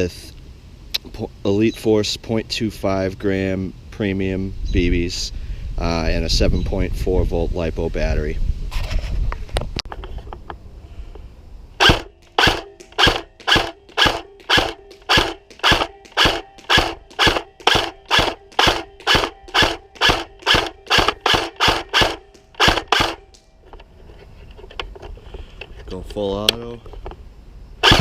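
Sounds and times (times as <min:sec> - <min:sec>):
airsoft gun firing single shots: 0:11.8 - 0:23.4
gearbox ringing: 0:11.8 - 0:23.4.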